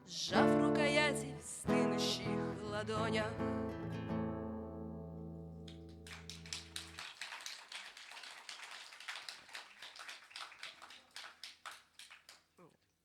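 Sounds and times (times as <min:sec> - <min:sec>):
acoustic guitar chord: 0:00.0 - 0:06.0
small audience applauding: 0:05.6 - 0:12.9.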